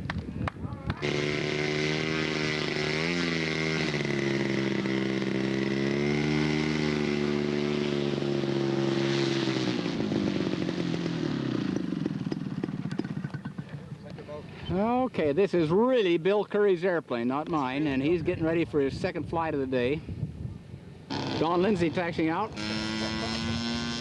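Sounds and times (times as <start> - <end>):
model airplane engine high revs: 0.9 - 14.6, 21.1 - 24.0.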